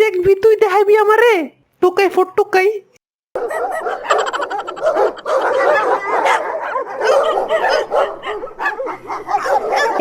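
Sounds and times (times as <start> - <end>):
cartoon dogs barking and yapping: 3.4 - 10.0.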